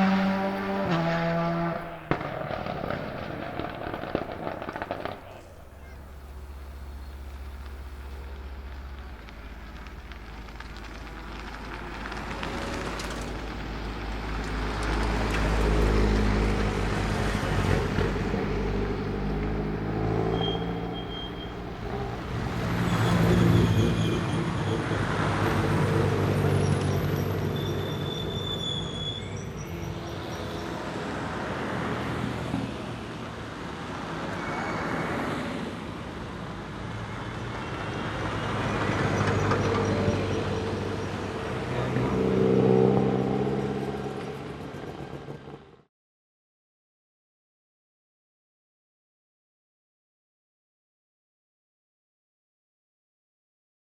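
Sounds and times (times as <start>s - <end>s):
race car engine revving: 0.0s - 5.2s.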